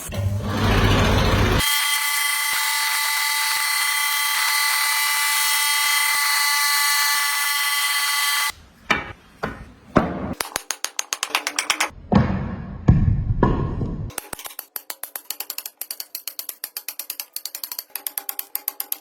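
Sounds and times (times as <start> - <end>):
electric carving tool whine: 0.6 - 8.5.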